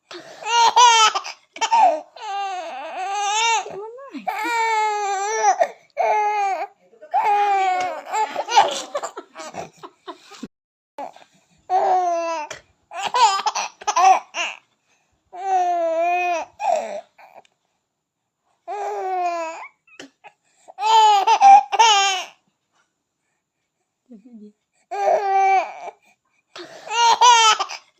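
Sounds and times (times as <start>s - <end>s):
baby laughing: 0.4s - 2.6s, 7.6s - 9.9s, 12.2s - 14.6s, 26.9s - 27.8s.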